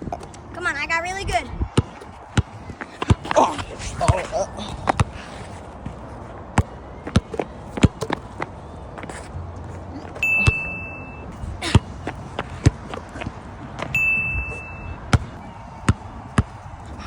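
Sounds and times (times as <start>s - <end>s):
basketball bouncing on hard court: 1.7s - 3.4s, 6.6s - 9.2s, 10.2s - 16.6s
short high-pitched tone: 10.2s - 11.3s, 14.0s - 15.0s.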